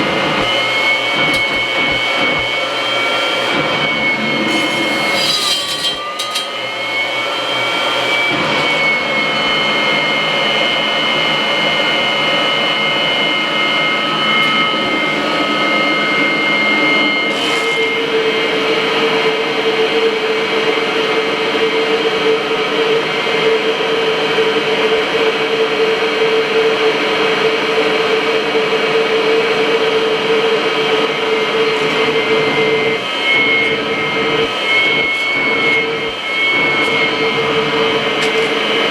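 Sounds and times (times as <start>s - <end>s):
vacuum cleaner whine: 0.0s - 38.9s.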